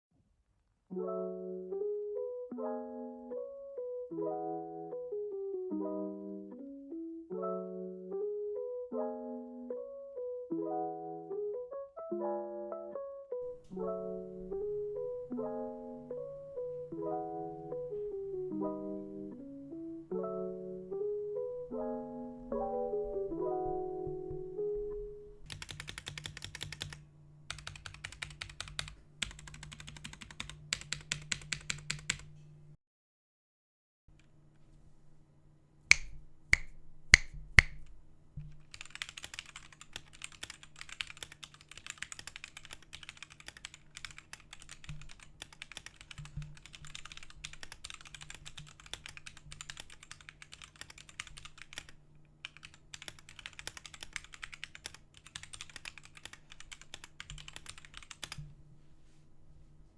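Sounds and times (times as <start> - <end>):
fast typing on mechanical keyboard: 25.5 - 32.3, 38.6 - 58.4.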